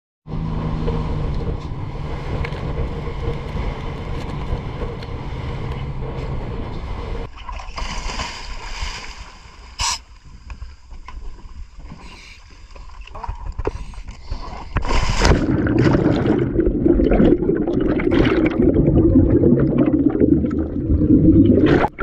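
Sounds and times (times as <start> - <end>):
wind: 0.2 - 15.9
boat engine droning: 0.3 - 7.3
water noise: 0.3 - 22.0.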